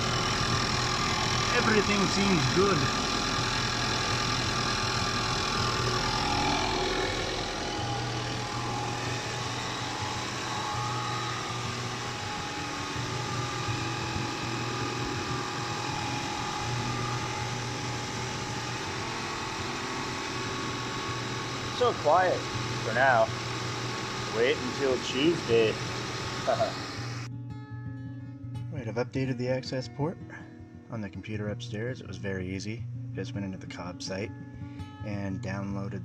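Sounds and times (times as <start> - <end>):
car engine idling: 0.0 - 27.3.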